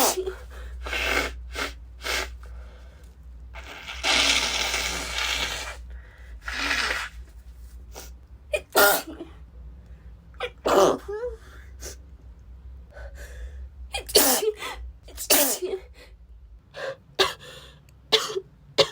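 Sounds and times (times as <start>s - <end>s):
woman sneezing: 0.0s - 0.4s, 14.0s - 15.9s
nose blowing: 0.0s - 2.5s, 3.6s - 7.3s.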